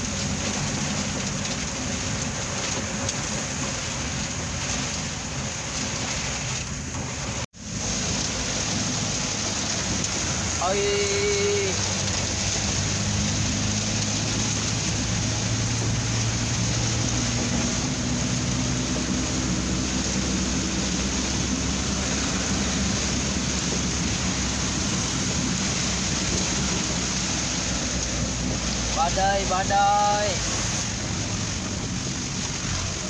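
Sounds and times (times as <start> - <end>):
engine and road hum: 0.0 - 33.0
heavy rain on car roof: 0.0 - 33.0.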